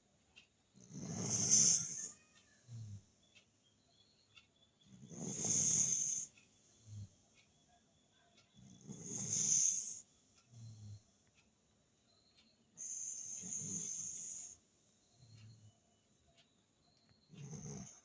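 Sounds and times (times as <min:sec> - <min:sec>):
dog snoring: 0:00.7 - 0:03.1, 0:04.8 - 0:07.3, 0:08.6 - 0:11.3, 0:12.8 - 0:14.6, 0:17.3 - 0:18.0.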